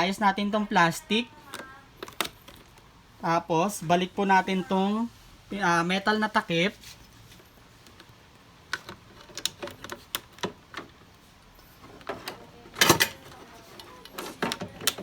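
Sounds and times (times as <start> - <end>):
metal cover clatter: 12.2 - 13.3.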